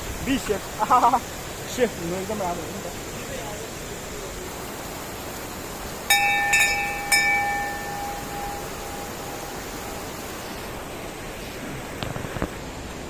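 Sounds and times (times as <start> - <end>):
waterfall rushing: 0.0 - 13.0
ringing metallic strikes: 6.1 - 10.2.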